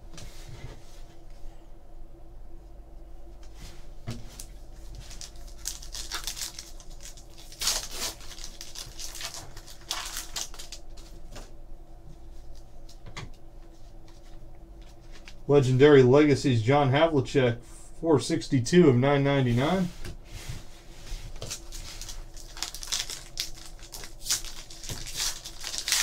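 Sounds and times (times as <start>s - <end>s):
faint steady hum: 0.0s - 26.0s
cards and wrapper rustling: 4.9s - 11.0s, 21.4s - 26.0s.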